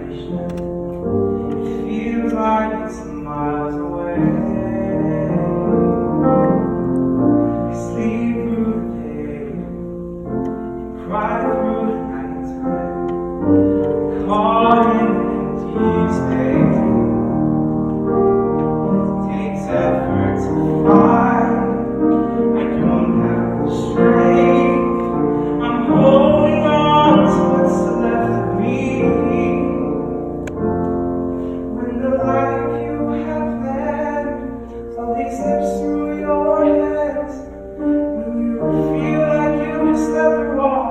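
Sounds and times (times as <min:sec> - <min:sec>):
piano accompaniment: 0:00.0 - 0:40.9
person singing: 0:07.3 - 0:30.2, 0:31.3 - 0:40.9.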